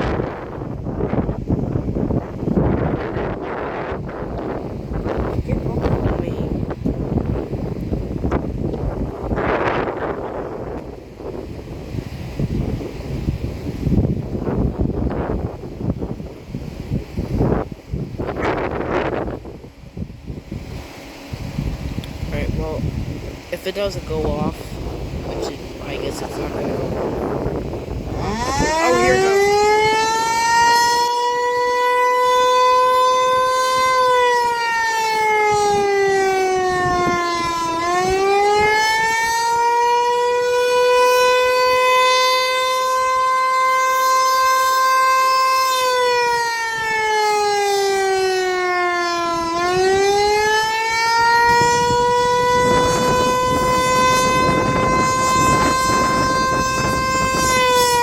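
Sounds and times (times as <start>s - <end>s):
electronic fire siren wailing: 0.0s - 8.5s, 25.4s - 58.0s.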